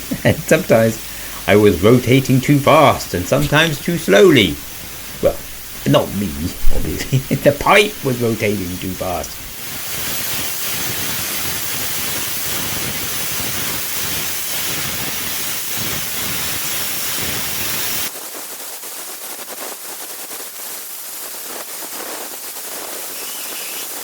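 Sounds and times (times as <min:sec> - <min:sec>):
thin quieter hiss: 0:00.0 - 0:11.0, 0:22.8 - 0:24.0
plasma cutter hissing: 0:00.0 - 0:18.1, 0:22.7 - 0:24.0.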